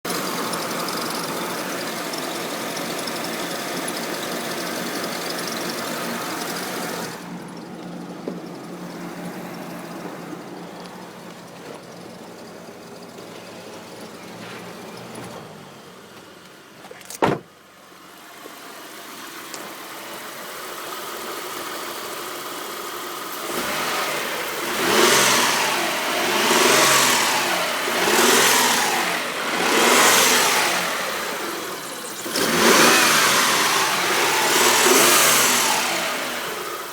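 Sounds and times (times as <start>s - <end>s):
car engine idling and revving: 0.0s - 36.9s
engine rattling: 0.0s - 36.9s
sharp thump: 17.2s - 17.5s.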